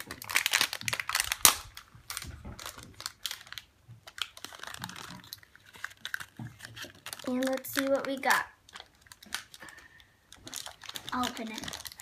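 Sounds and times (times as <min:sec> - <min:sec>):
plastic packaging crinkling: 0:00.0 - 0:12.0.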